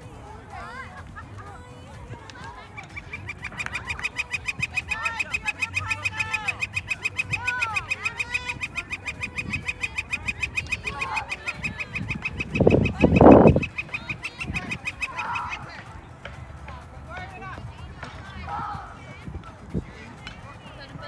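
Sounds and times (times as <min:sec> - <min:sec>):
birds chirping: 0:00.0 - 0:16.7
high-pitched ticking bird trill: 0:02.6 - 0:15.8.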